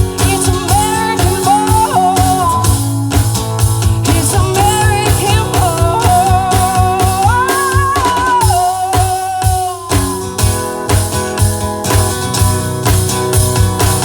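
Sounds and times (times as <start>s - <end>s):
drum kit beat: 0.0s - 14.0s
guitar: 0.0s - 14.0s
person singing long notes: 4.1s - 10.1s.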